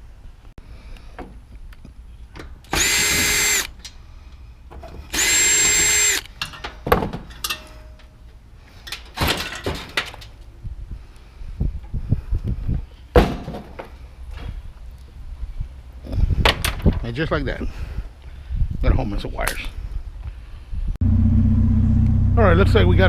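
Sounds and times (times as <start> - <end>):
power drill spinning: 2.7 - 3.8, 5.1 - 6.3
metal parts clattering: 8.8 - 10.3.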